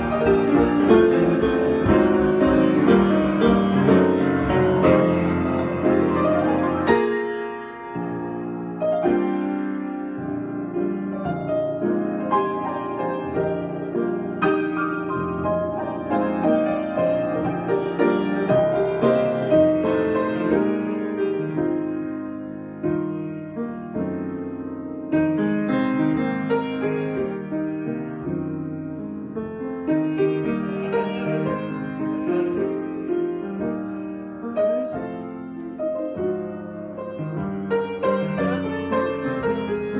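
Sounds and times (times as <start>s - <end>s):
solo piano playing: 0.0s - 39.9s.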